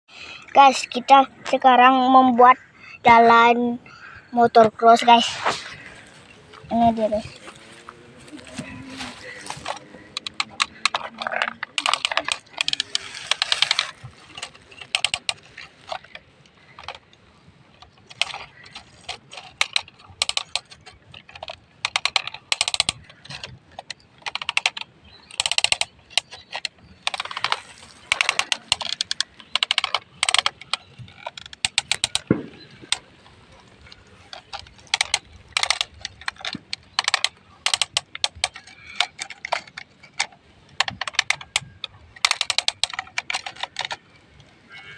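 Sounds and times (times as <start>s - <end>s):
toy excavators clicking and rattling: 0.2s - 44.9s
dirt being pushed: 4.0s - 17.3s.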